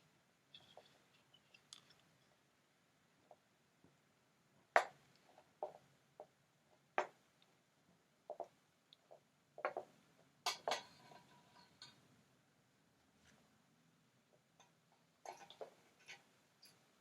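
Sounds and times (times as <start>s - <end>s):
irregular clicks and knocks: 0.5s - 2.3s, 8.3s - 12.1s.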